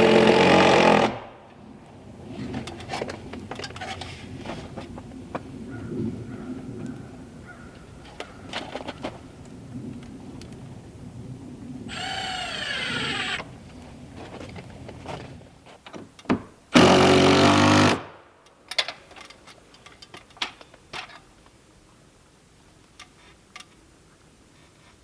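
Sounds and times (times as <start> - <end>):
cordless power driver running: 11.9 - 13.5.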